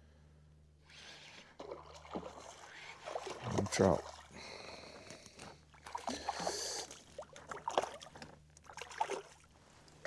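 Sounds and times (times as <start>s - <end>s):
water splashes: 1.6s - 4.7s, 5.7s - 9.5s.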